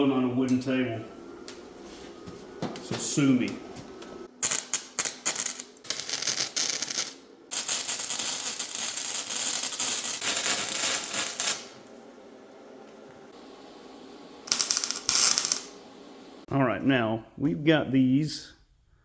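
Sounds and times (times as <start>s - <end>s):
electric arc welding crackling: 4.3s - 11.9s, 14.5s - 15.8s.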